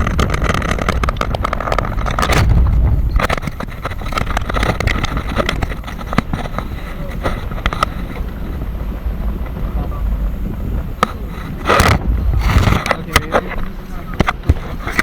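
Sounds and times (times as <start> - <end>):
knocks and rattles: 0.0 - 7.9
car road rumble: 0.0 - 15.0.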